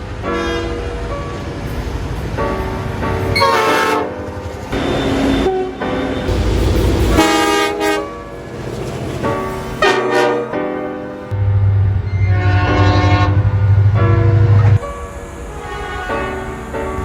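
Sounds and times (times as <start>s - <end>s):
train horn blasts: 0.2s - 0.9s, 3.3s - 8.4s, 9.8s - 11.3s, 12.0s - 14.8s, 15.4s - 17.0s.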